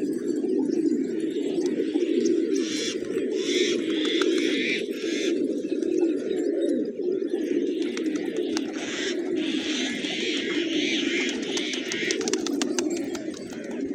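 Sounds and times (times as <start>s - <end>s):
pigeons cooing: 0.0s - 13.9s
scattered clicks: 11.3s - 13.6s.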